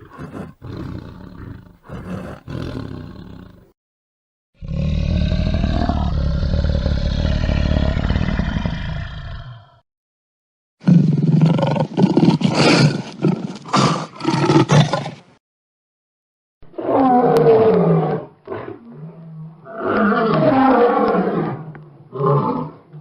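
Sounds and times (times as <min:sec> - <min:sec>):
lion low growl: 0:00.0 - 0:03.7, 0:04.6 - 0:09.8
lion roaring: 0:00.0 - 0:03.7, 0:04.6 - 0:09.8, 0:16.7 - 0:23.0.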